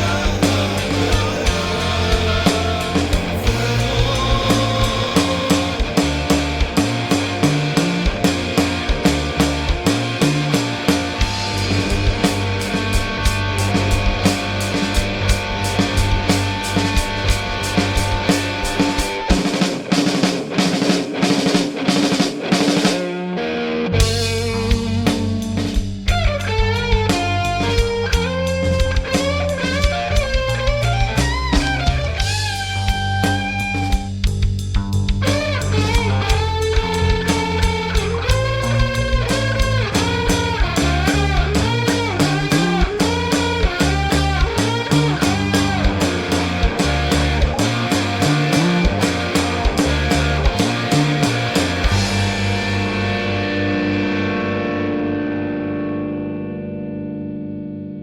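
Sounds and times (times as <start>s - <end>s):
bass notes: 0.0s - 19.5s, 24.0s - 58.0s
electric guitar bending notes: 0.0s - 19.7s, 23.0s - 34.2s, 34.8s - 58.0s
drum kit and cymbal hits: 0.0s - 23.1s, 24.0s - 53.2s
rock band playing: 0.0s - 58.0s.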